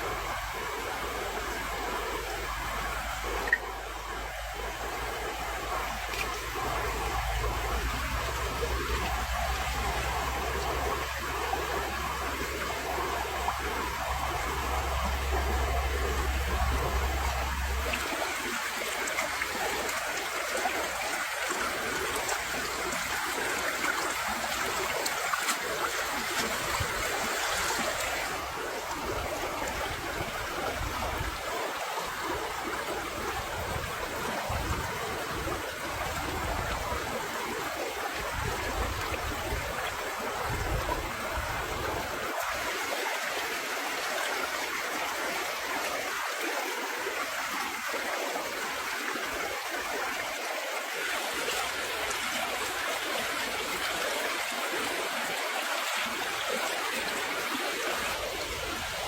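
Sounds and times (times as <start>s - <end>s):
water trickling: 0.0s - 59.0s.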